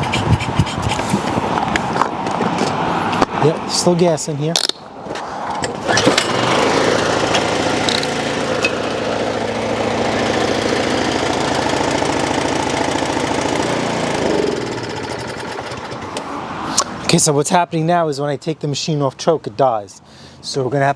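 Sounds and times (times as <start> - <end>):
snowblower engine running: 5.7 - 16.4.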